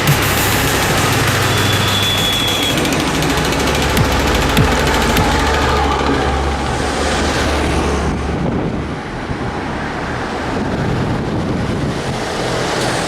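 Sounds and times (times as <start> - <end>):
heavy vehicle engine drone: 0.0 - 13.0
tyre and road noise: 0.0 - 13.0
wind buffeting microphone: 2.8 - 13.0.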